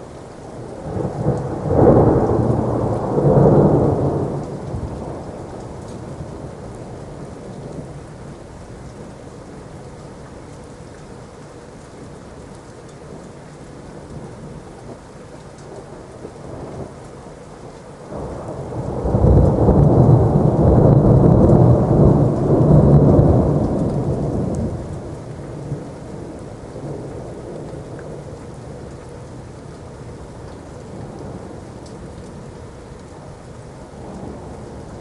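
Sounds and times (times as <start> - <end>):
steady rain: 0.0 - 35.0
thunder rolling: 0.8 - 7.1, 18.1 - 28.3.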